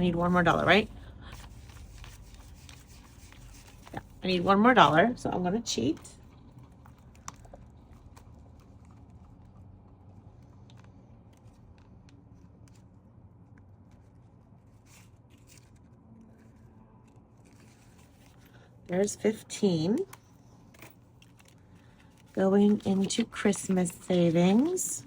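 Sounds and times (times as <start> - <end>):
low room hum: 0.0 - 25.0
paper rustling: 0.2 - 5.1, 10.3 - 18.7, 20.2 - 25.0.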